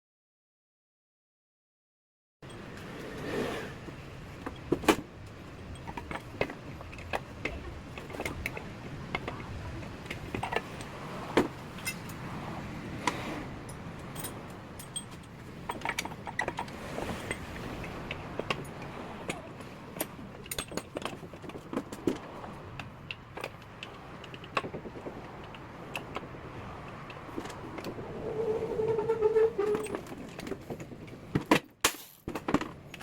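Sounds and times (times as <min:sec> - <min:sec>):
metal tools clinking: 0:11.8 - 0:12.2, 0:13.6 - 0:16.7.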